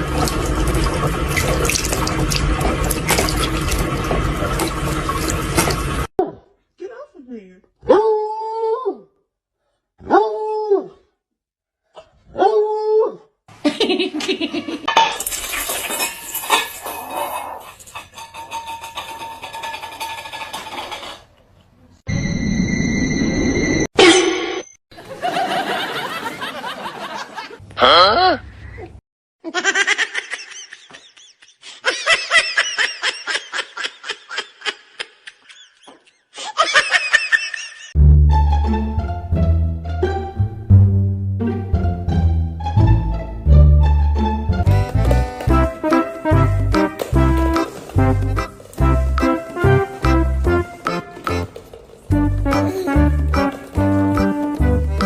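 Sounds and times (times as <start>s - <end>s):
person laughing hard: 13.6s - 14.9s, 29.5s - 38.0s, 52.5s - 53.2s
clattering: 14.9s - 21.4s
plucked string music: 38.0s - 55.0s.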